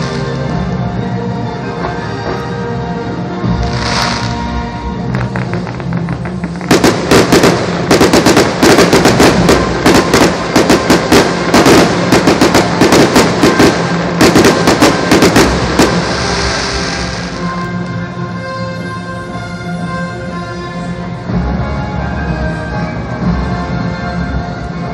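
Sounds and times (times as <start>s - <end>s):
music: 0.0s - 24.9s
firework bangs and crackles: 3.6s - 17.7s.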